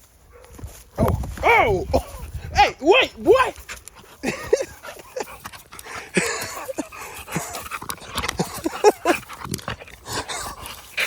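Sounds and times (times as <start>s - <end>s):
dogs yelping and grunting: 3.6s - 11.0s.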